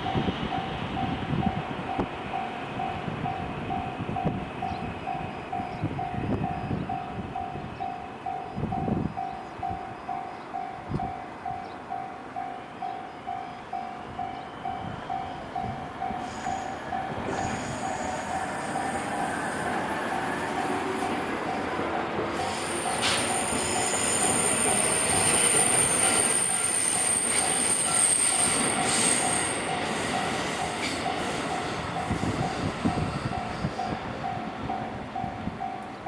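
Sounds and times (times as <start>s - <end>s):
level crossing warning bell: 22.8s - 36.0s.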